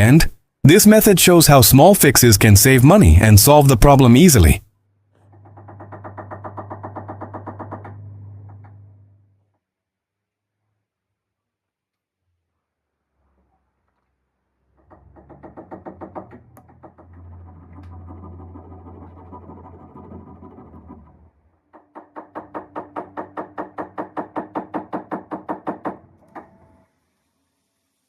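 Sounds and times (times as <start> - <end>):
rapid knocking: 5.3 - 8.8, 14.8 - 26.6.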